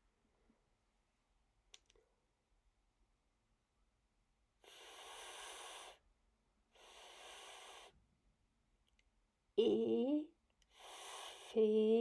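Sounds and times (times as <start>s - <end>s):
close breaths: 4.6s - 6.0s, 6.7s - 8.0s, 10.7s - 11.6s.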